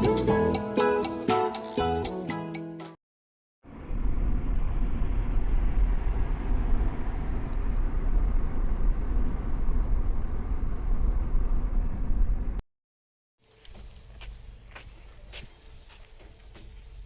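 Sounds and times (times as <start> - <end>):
vehicle rumble and hiss: 3.7 - 12.6.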